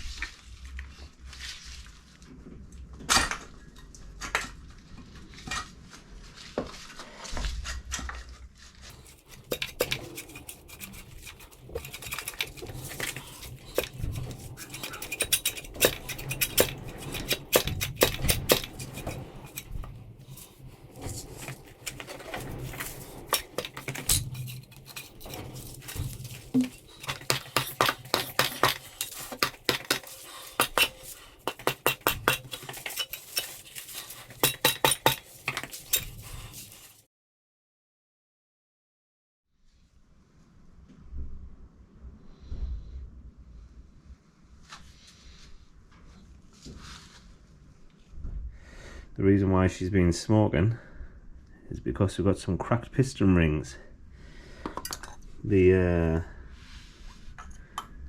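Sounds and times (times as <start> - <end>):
metal tools clinking and scraping: 8.9 - 37.0.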